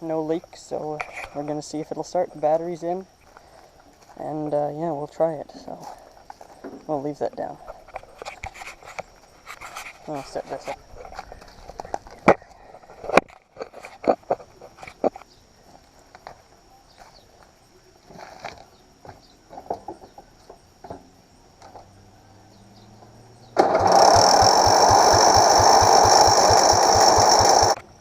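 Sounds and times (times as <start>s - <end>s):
engine cranking with starter whine: 23.4s - 28.0s.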